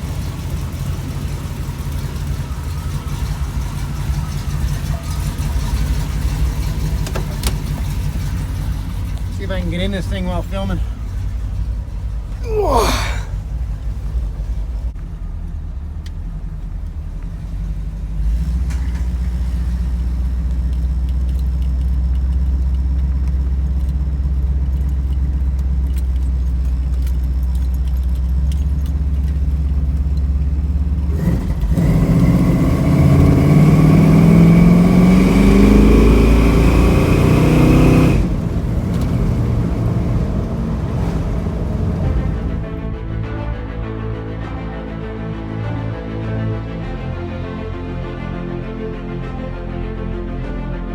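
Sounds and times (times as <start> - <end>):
vehicle engine accelerating: 0.0 - 12.4, 28.5 - 47.1.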